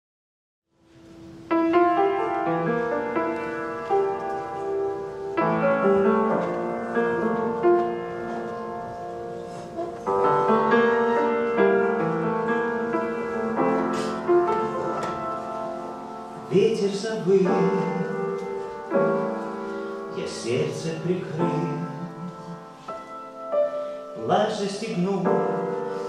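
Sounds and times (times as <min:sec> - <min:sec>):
slow solo piano chords: 0:00.8 - 0:26.0.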